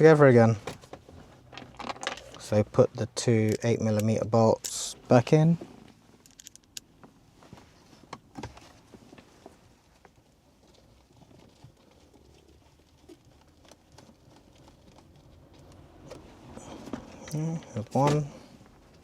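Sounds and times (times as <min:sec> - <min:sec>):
bolts clicking and tapping: 0:03.2 - 0:05.0, 0:06.2 - 0:07.2.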